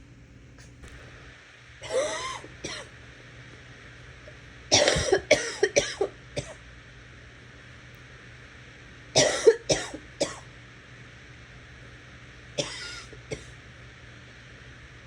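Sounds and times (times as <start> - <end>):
person coughing and gagging: 1.8 - 2.9, 4.7 - 6.6, 9.2 - 10.4, 12.6 - 13.5.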